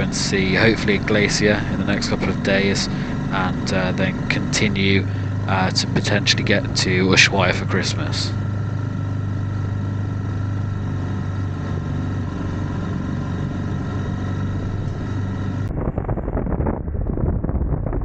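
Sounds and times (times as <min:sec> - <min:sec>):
motorcycle engine running: 0:00.0 - 0:17.6
wind noise on microphone: 0:14.4 - 0:18.0.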